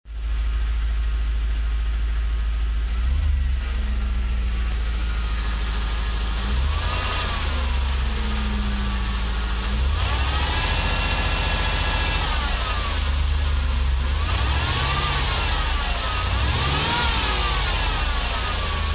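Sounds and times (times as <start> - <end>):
car engine revving: 2.8 - 18.9.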